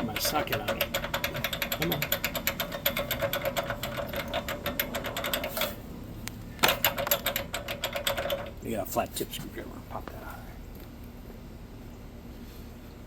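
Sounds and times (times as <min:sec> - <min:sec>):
ratchet clicking: 0:00.0 - 0:05.8.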